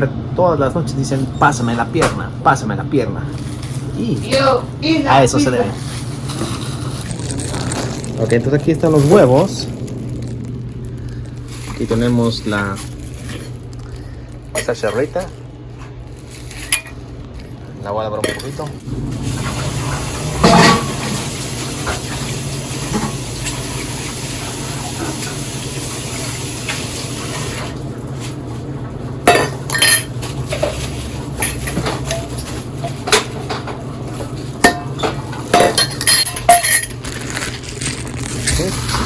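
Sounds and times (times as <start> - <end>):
dishes clinking: 14.6 - 15.3, 16.5 - 17.0, 18.2 - 18.7, 20.4 - 21.1, 29.2 - 37.1
kitchen tap running: 18.4 - 37.7.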